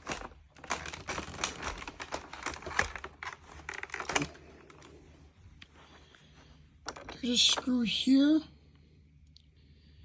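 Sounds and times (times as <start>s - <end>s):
plastic vacuum handled by hand: 0.0s - 4.9s.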